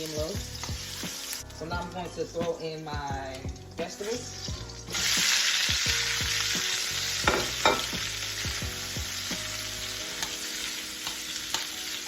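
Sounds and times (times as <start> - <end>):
vegetables sizzling in hot oil: 0.0 - 12.0
utensil knocking against wok: 7.2 - 8.0.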